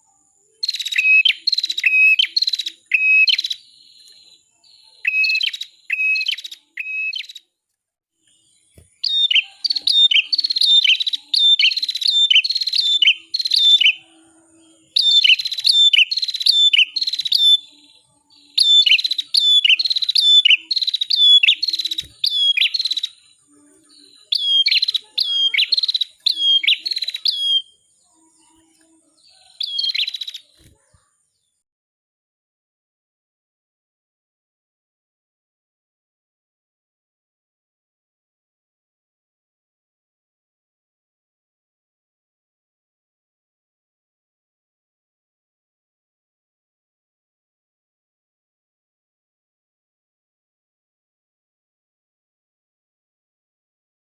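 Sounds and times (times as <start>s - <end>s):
bird singing sharp notes: 0.5s - 7.4s, 8.2s - 31.6s.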